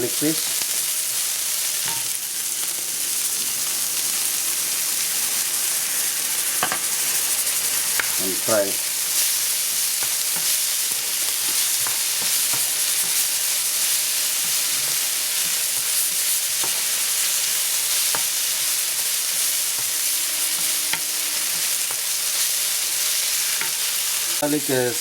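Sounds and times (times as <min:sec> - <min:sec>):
paste sizzling in hot oil: 0:00.0 - 0:25.0
spatula stirring a pan: 0:06.5 - 0:24.4.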